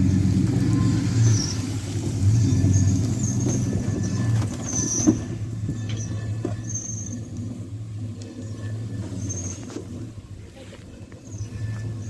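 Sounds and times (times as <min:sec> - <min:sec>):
vehicle engine hum: 0:00.0 - 0:12.0
high-pitched squeaks: 0:02.2 - 0:07.6.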